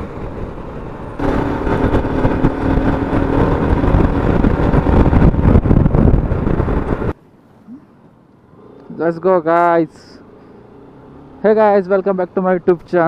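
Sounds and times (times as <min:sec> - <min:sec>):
motorcycle engine: 0:00.0 - 0:07.2
wind buffeting microphone: 0:00.0 - 0:07.2.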